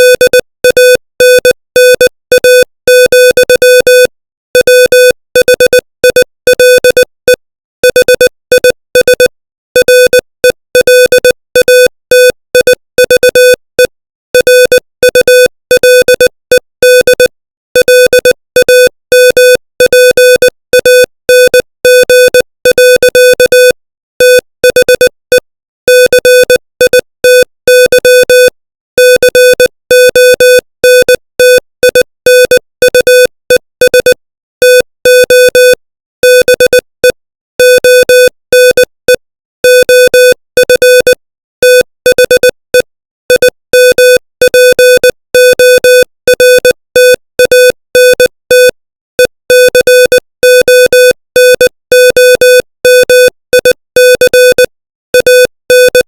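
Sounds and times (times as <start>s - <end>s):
morse code beeps: 0.0s - 56.0s.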